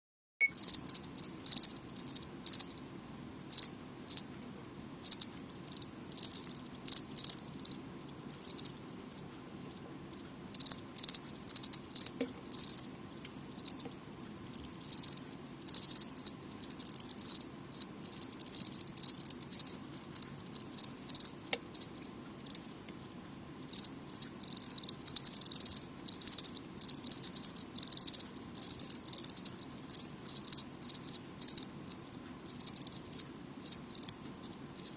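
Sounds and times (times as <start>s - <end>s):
crickets chirping: 0.4s - 2.7s, 3.5s - 4.3s, 5.0s - 8.8s, 10.5s - 12.9s, 13.6s - 13.9s, 14.6s - 22.6s, 23.7s - 34.2s
faint steady hum: 0.4s - 34.9s.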